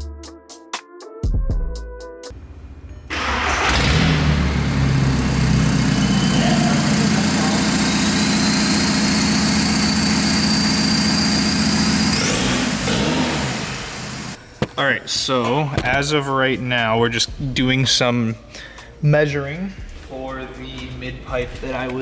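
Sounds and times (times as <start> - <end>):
car engine starting and running: 2.4 - 14.8.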